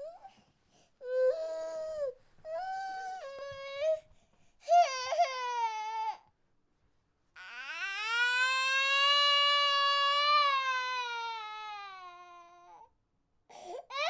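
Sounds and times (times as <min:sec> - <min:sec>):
infant crying: 0:04.7 - 0:06.3, 0:07.4 - 0:12.9, 0:13.6 - 0:14.0.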